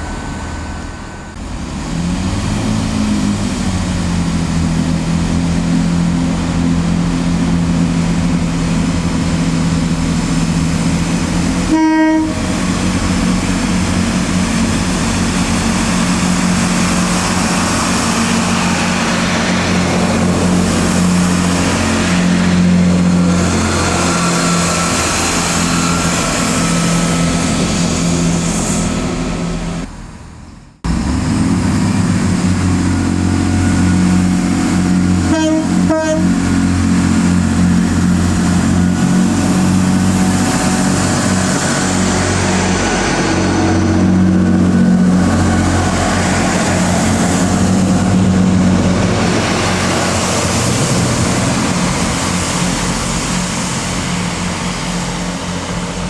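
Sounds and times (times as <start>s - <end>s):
train running past: 0.0s - 56.0s
train horn toots: 11.6s - 12.6s, 35.2s - 36.5s.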